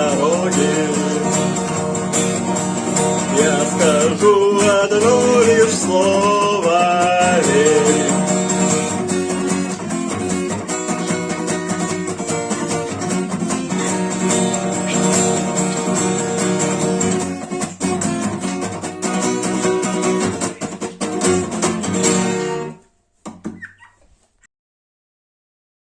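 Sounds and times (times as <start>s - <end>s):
acoustic guitar strumming: 0.0s - 23.6s
faint guitar handling noises: 8.5s - 24.4s.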